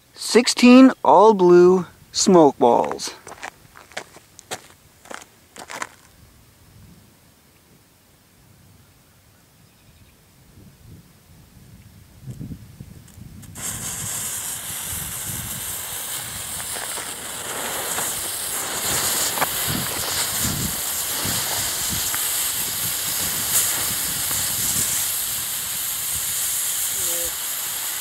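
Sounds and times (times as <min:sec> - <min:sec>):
smoke balls hissing: 0:13.4 - 0:28.0.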